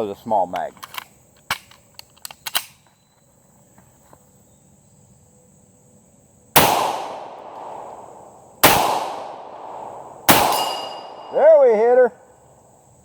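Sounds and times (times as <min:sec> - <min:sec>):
pistol handling clicks: 0:00.6 - 0:02.9
pistol shot: 0:06.6 - 0:11.4.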